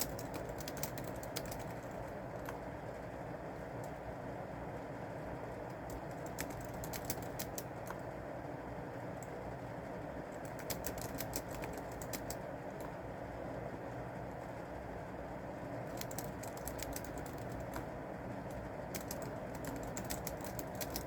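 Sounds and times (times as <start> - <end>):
typing on a keyboard: 0.0 - 2.6, 5.7 - 8.1, 10.3 - 13.0, 15.9 - 17.9, 18.5 - 21.0.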